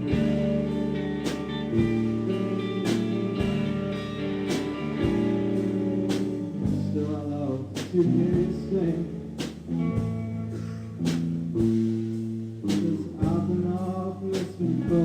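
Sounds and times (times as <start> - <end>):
guitar strumming chords: 0.0 - 11.0.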